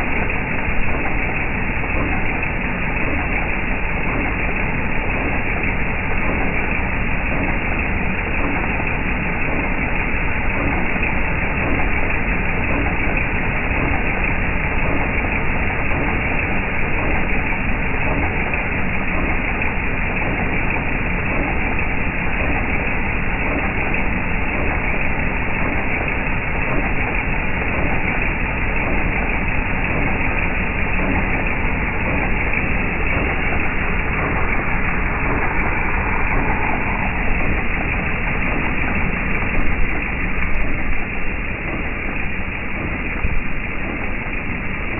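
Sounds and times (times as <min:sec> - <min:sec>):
engine running with knocking: 0:00.0 - 0:44.9.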